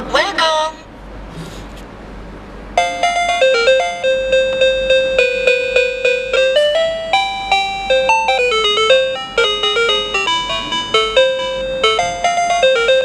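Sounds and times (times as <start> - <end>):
toy electronic beeping melody: 2.8 - 13.0.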